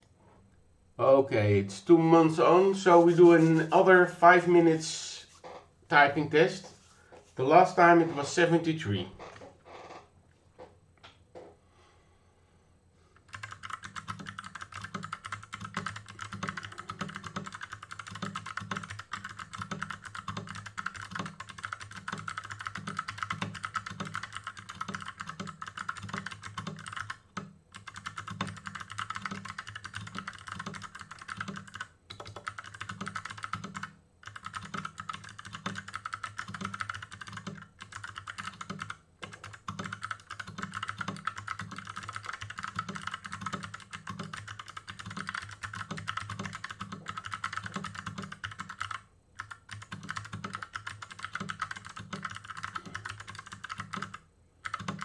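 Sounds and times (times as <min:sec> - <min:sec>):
mechanical keyboard typing: 0:13.2 - 0:55.0.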